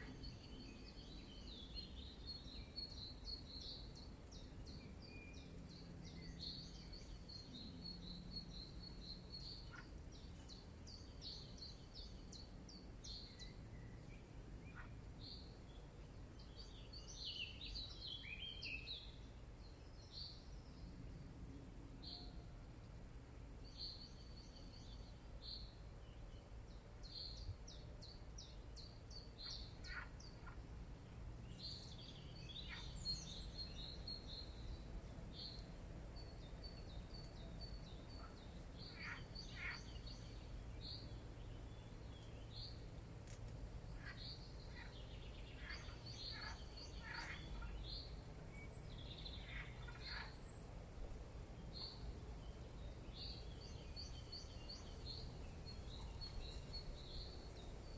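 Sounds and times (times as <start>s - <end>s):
small birds chirping: 23.6s - 57.9s.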